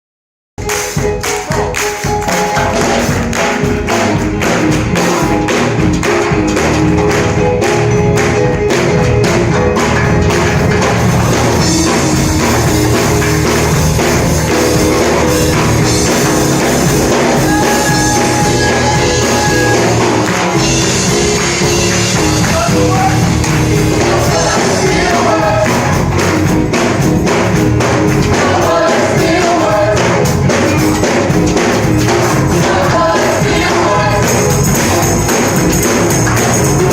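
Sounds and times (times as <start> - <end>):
held chords: 0.6 - 36.9
tambourine beat: 0.6 - 36.9
bass line: 2.1 - 36.9
voices singing: 14.7 - 26.5, 27.9 - 30.8, 32.0 - 36.9.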